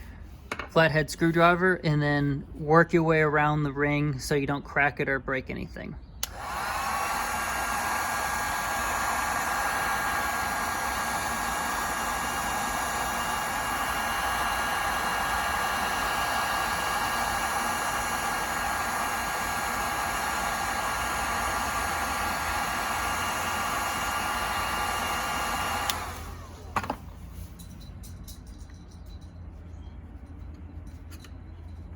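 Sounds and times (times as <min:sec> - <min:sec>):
heat gun blowing: 0:06.2 - 0:27.6.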